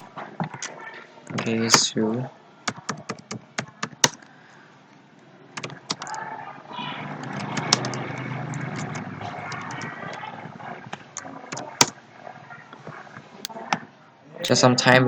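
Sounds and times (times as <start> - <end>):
computer keyboard keys clicking: 2.7 - 4.3, 5.6 - 6.2, 7.2 - 10.0.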